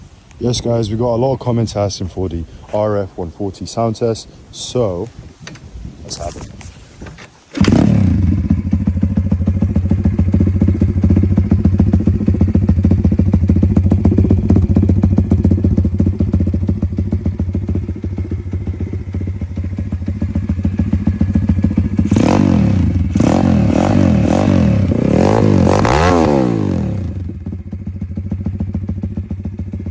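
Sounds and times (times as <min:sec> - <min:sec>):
motorbike engine idling and revving: 0:07.5 - 0:29.9.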